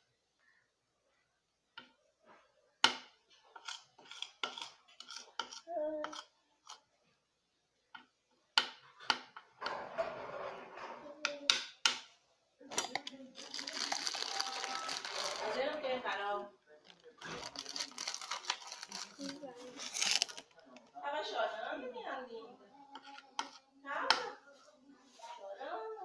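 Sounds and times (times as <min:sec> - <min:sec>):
spoon scraping a bowl: 0:03.5 - 0:06.9, 0:23.0 - 0:23.7.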